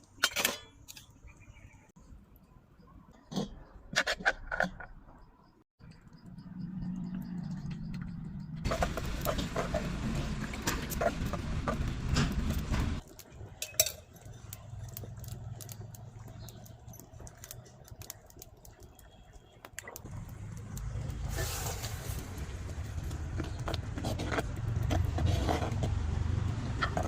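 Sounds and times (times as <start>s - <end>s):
metal utensils clinking and scraping: 0.1s - 1.2s, 8.7s - 18.1s.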